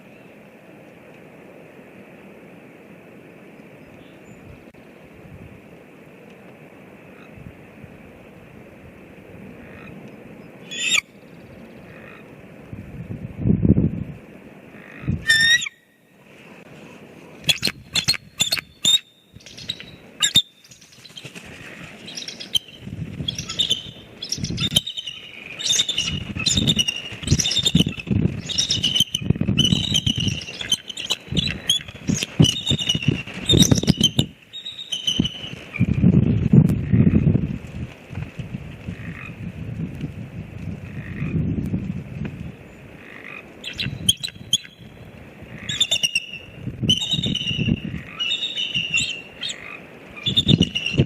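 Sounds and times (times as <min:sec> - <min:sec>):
wind buffeting microphone: 0:03.8 - 0:05.8, 0:11.2 - 0:15.4, 0:21.3 - 0:49.4, 0:50.2 - 0:51.0
eagles high-pitched chirps: 0:10.7 - 0:11.1, 0:15.2 - 0:15.8, 0:17.4 - 0:20.8, 0:22.0 - 0:35.9, 0:43.6 - 0:44.9, 0:45.6 - 0:51.0.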